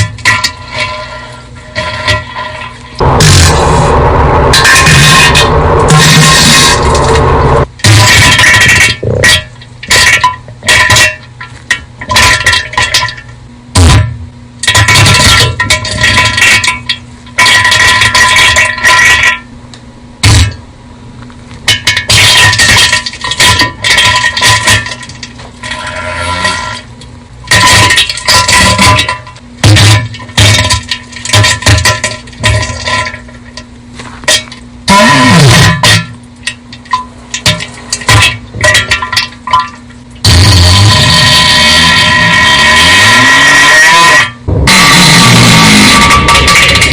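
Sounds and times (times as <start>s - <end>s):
distorted sputtering bursts: 3.0s - 9.2s, 34.9s - 35.8s, 40.2s - 46.9s.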